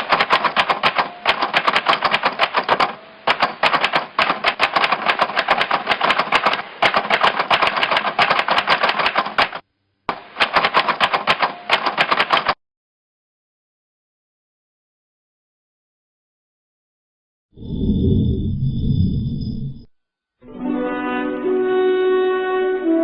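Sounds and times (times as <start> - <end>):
rapid clattering: 0.0 - 12.6.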